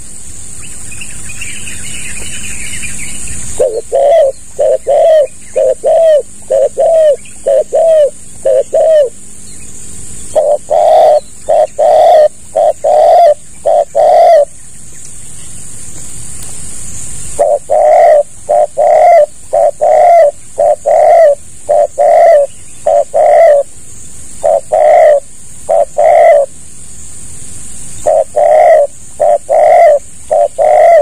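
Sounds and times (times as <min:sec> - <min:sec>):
steady high hiss: 0:00.0 - 0:31.0
dove cooing: 0:03.5 - 0:09.2, 0:10.3 - 0:14.6, 0:17.3 - 0:23.8, 0:24.4 - 0:26.6, 0:28.0 - 0:31.0.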